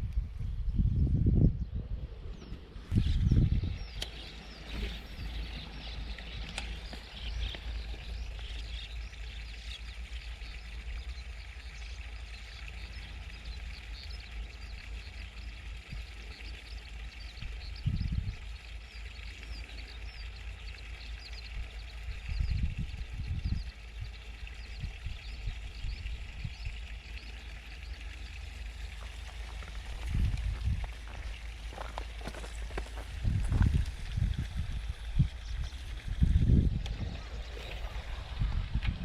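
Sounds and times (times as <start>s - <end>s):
low rumble on microphone: 0.0s - 39.0s.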